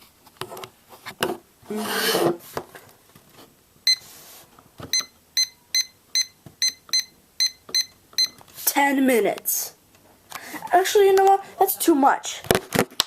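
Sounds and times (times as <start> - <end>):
digital timer beeping: 5.0 - 8.4.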